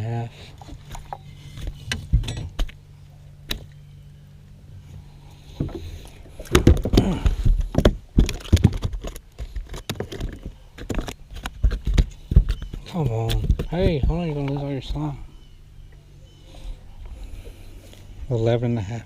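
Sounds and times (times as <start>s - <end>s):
steady low hum: 0.0s - 19.0s
knocks and rattles in a boat: 0.6s - 2.8s, 5.5s - 15.1s.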